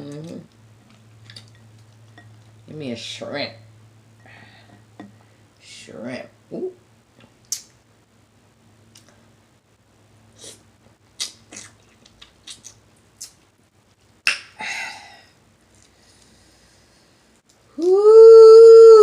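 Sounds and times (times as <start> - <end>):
lip smacking: 10.4 - 13.4
wet chewing: 11.1 - 13.4
breathy sound: 14.6 - 17.2.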